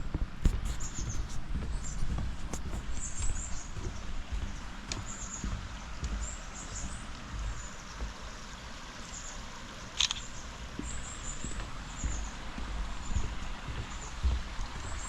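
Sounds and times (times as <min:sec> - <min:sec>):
sharp click: 0:10.0 - 0:10.3
low rumble: 0:10.8 - 0:15.0.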